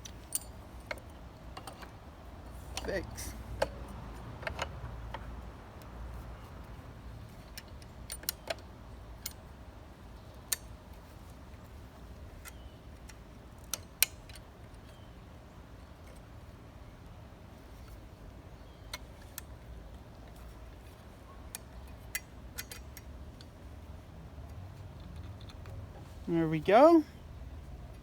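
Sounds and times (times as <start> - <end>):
small metallic clicks and taps: 0.0 - 2.0, 2.7 - 6.0, 7.4 - 9.4, 10.3 - 11.0, 12.4 - 15.0, 18.8 - 23.7, 24.4 - 26.0.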